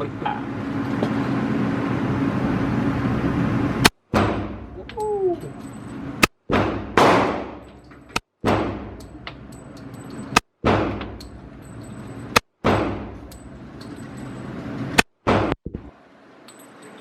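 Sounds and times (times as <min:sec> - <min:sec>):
gunshots with echo: 0:06.5 - 0:07.6.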